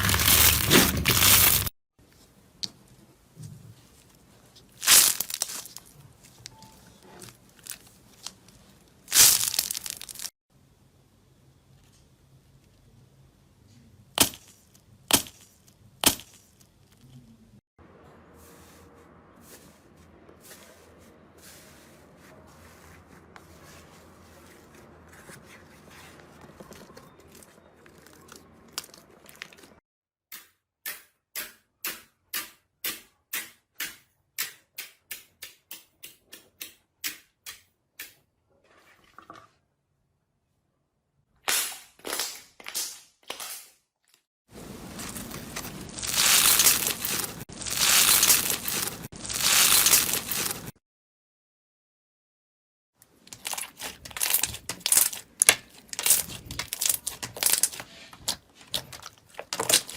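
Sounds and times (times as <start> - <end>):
slime crackling: 7.5 - 10.3, 44.8 - 50.7, 53.3 - 59.9
slime squishing: 44.8 - 50.7, 53.2 - 59.9.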